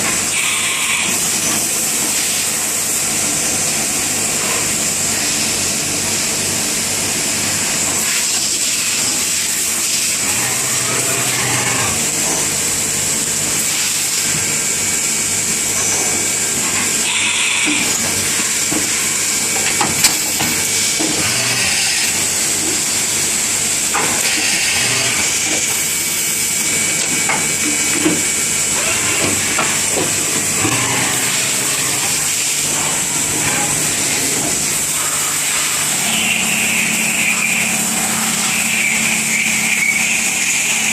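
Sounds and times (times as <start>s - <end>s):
machine tool hissing: 20.0s - 22.8s, 24.1s - 26.8s, 28.6s - 40.9s.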